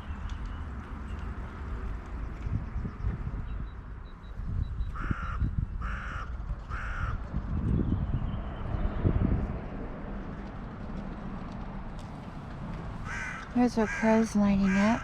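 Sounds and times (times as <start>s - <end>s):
crow cawing: 5.0s - 7.2s, 13.0s - 15.0s.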